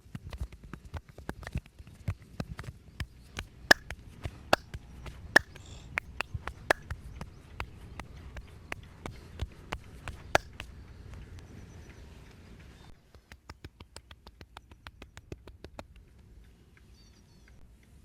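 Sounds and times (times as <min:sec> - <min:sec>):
massage slaps and taps: 0:03.0 - 0:10.8, 0:13.1 - 0:16.0.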